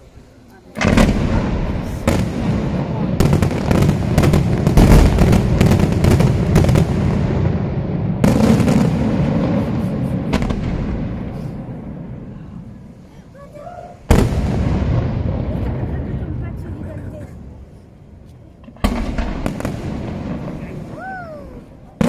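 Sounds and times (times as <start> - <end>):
echoing rumble: 0.8 - 13.4, 14.0 - 22.0
fireworks shell reports: 8.2 - 17.8, 18.9 - 22.0.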